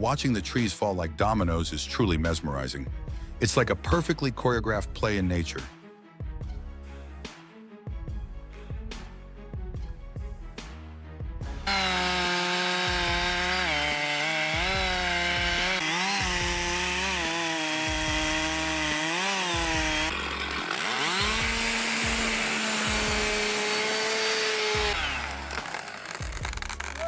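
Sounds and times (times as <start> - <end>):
chainsaw running at high revs: 11.6 - 27.0.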